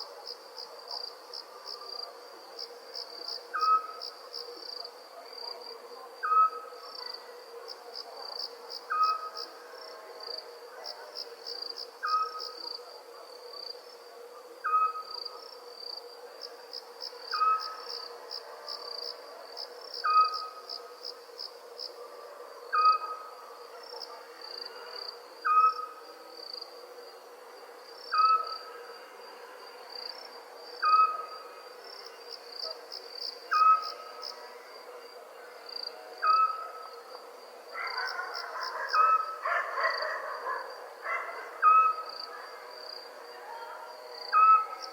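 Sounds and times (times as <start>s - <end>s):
crickets chirping: 0.0s - 44.9s.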